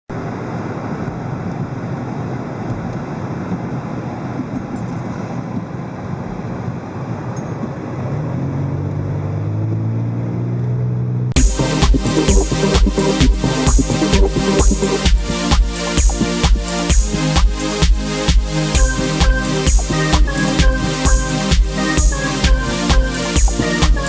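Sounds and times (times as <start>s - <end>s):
road and wind noise: 0.1s - 11.4s.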